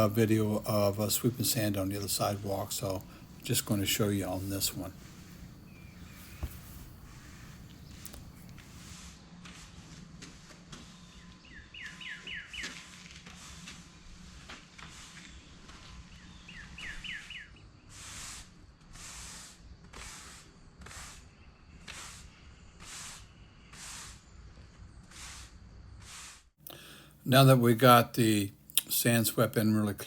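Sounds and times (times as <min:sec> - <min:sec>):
bird chirping: 0:00.0 - 0:08.8, 0:11.4 - 0:12.7, 0:16.1 - 0:17.6
broom sweeping sand on pavers: 0:00.0 - 0:26.6.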